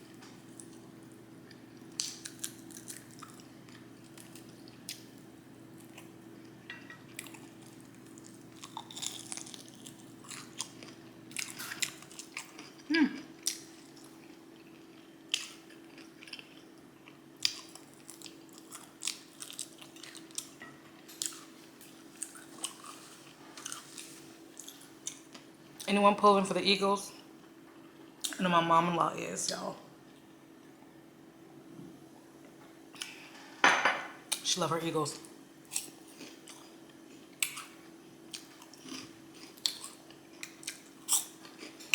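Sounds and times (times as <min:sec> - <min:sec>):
person chewing food: 0:01.4 - 0:20.6, 0:21.2 - 0:25.9, 0:35.6 - 0:41.9.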